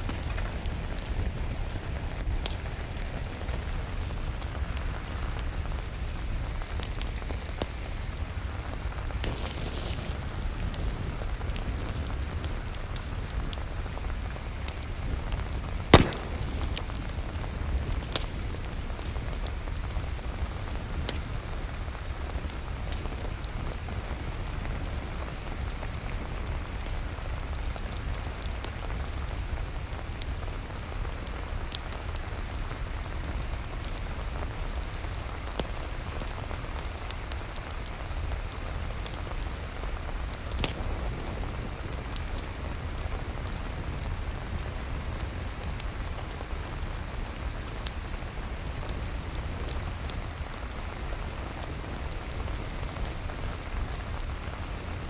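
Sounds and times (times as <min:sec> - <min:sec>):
steady rain falling: 0:00.0 - 0:55.0
wood fire crackling: 0:02.2 - 0:23.4, 0:33.8 - 0:55.0.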